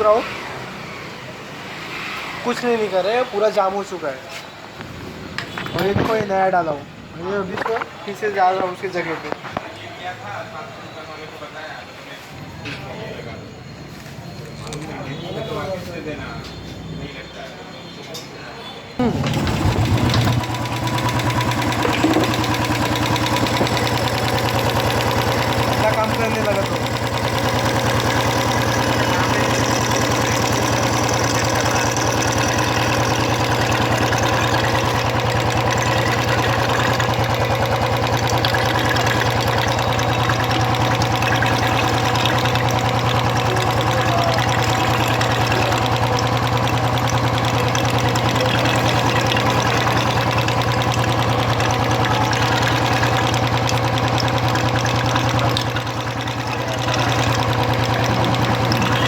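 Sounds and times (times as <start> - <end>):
motorcycle engine idling: 19.0 - 59.0.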